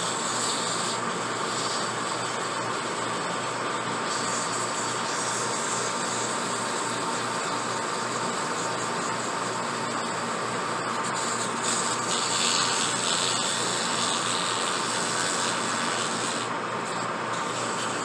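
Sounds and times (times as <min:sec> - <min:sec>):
power tool running: 0:00.0 - 0:18.0.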